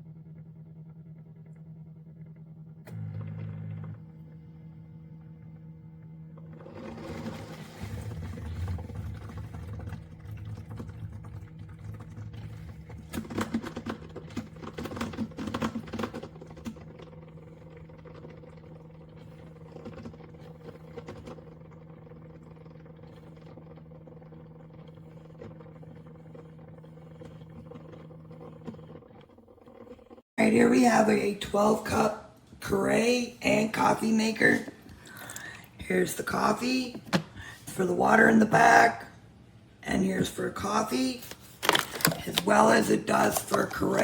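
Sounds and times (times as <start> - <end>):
coffee maker humming: 0.0 - 44.0
crackling and sputtering: 8.4 - 30.3.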